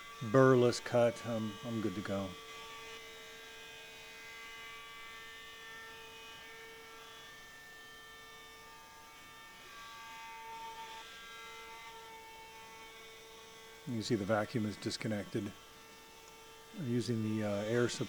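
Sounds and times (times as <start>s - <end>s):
router spindle whining: 9.7s - 18.0s.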